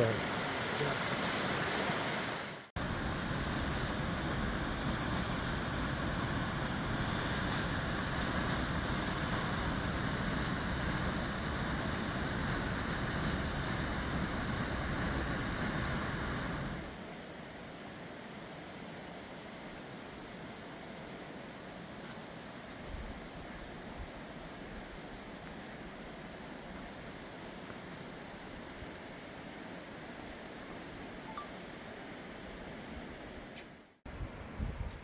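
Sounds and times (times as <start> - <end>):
water rushing: 0.0 - 2.7.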